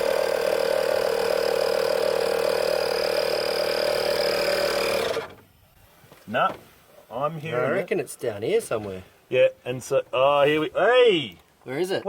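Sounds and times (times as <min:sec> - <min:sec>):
air compressor whining: 0:00.0 - 0:05.7.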